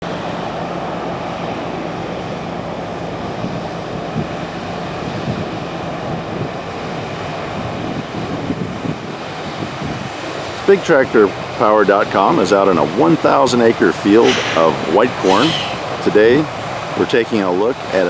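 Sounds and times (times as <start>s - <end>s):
combine harvester engine hum: 0.0s - 18.0s
even rushing noise: 12.3s - 17.3s.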